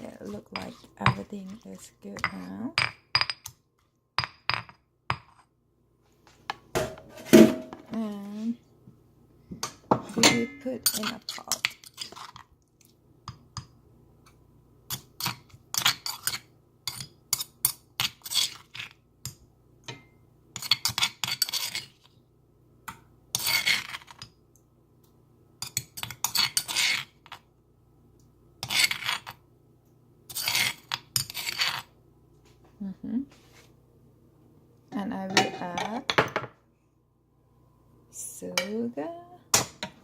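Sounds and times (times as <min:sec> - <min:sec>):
spoon scraping: 0:00.0 - 0:03.9, 0:10.1 - 0:12.5, 0:14.9 - 0:19.0, 0:20.6 - 0:22.1, 0:23.3 - 0:24.3, 0:25.6 - 0:27.4, 0:28.6 - 0:29.4, 0:30.3 - 0:32.0.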